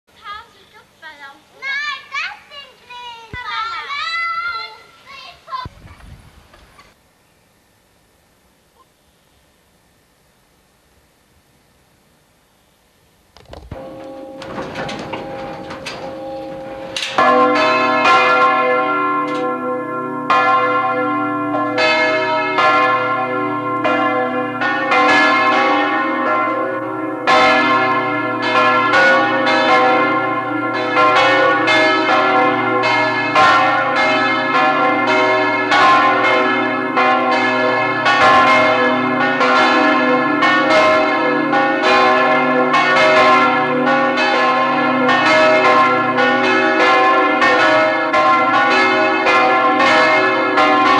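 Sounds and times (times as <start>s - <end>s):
church bells ringing: 13.8s - 50.9s.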